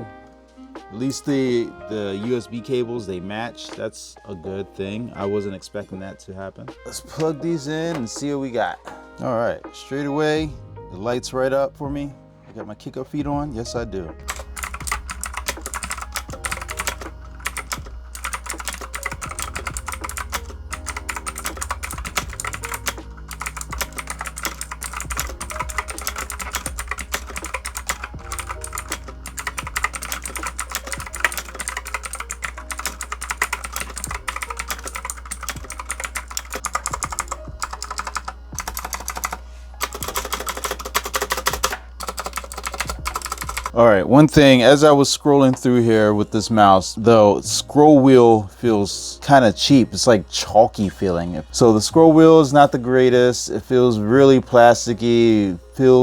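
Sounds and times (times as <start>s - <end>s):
fast typing on mechanical keyboard: 14.3s - 43.8s.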